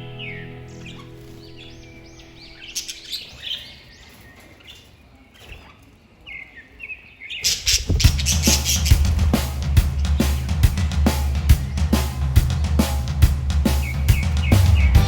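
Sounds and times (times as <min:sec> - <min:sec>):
music: 0:00.0 - 0:02.7, 0:08.1 - 0:15.0
budgerigars chirping: 0:00.0 - 0:09.3, 0:13.8 - 0:15.0
loud drum-backed music: 0:07.9 - 0:15.0.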